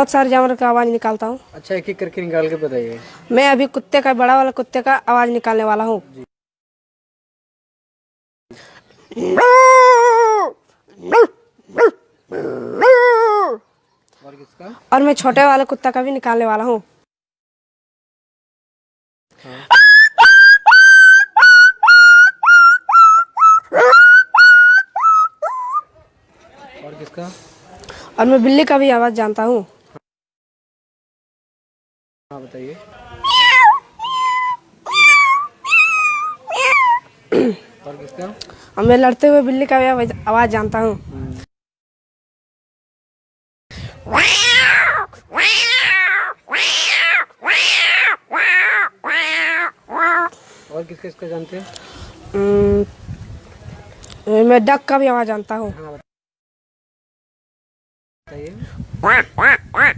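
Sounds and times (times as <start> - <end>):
person imitating dog yelps: 9.1 - 13.6, 19.7 - 25.9, 33.2 - 37.1, 44.0 - 50.3.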